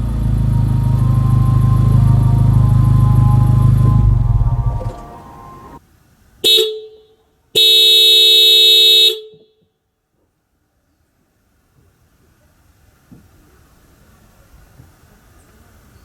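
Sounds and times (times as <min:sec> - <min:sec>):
car horn: 0:00.0 - 0:05.8, 0:06.4 - 0:07.0, 0:07.6 - 0:09.5
low engine sound: 0:00.0 - 0:05.8.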